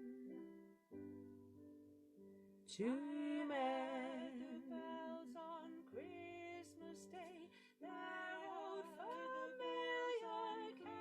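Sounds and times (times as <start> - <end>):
layered female vocal harmony: 2.8 - 11.0.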